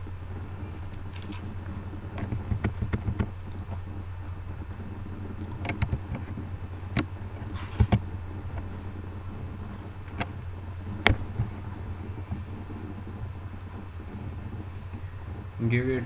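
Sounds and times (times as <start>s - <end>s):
low electrical hum: 0.0s - 16.0s
keyboard typing and mouse clicks: 5.4s - 8.0s.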